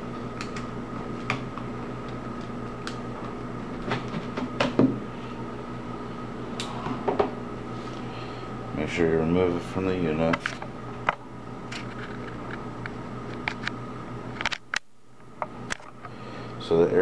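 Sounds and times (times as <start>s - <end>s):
steady electrical hum: 0.0s - 17.0s.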